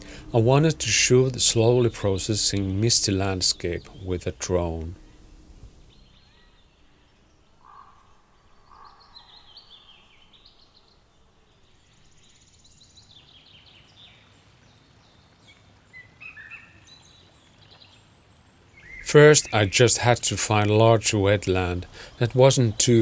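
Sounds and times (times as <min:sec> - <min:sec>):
lower bird calls: 0:00.0 - 0:11.1, 0:18.8 - 0:23.0
small birds chirping: 0:00.0 - 0:15.3, 0:18.8 - 0:23.0.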